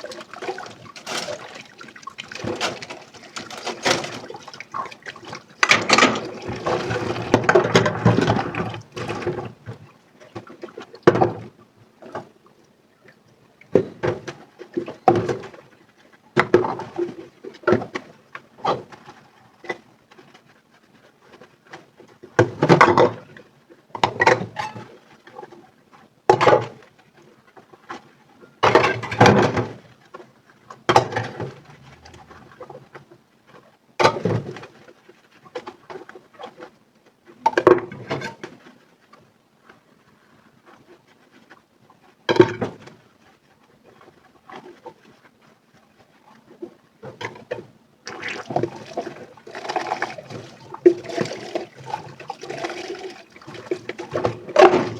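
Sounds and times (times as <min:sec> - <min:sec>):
water splashing: 0:00.0 - 0:07.5, 0:48.1 - 0:54.9
running water: 0:00.0 - 0:09.6, 0:48.0 - 0:54.9.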